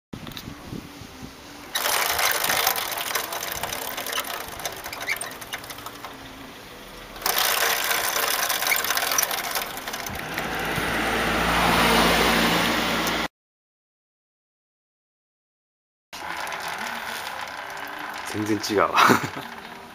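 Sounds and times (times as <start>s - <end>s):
drive chain clicking and rattling: 1.7s - 6.5s, 7.1s - 10.8s, 16.2s - 19.9s.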